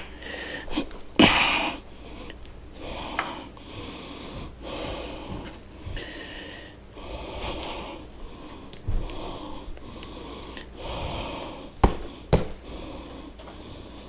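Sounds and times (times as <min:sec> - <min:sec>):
foot pump wheezing hiss: 0:00.0 - 0:08.1.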